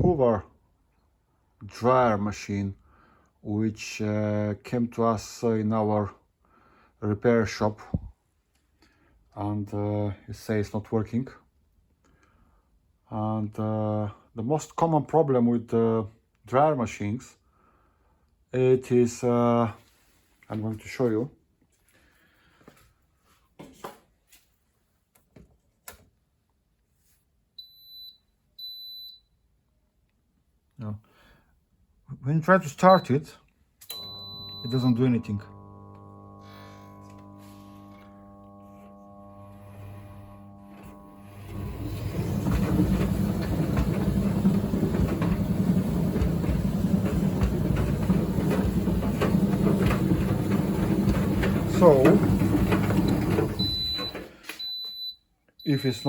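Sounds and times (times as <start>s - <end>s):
dryer motor humming: 34.6s - 54.4s.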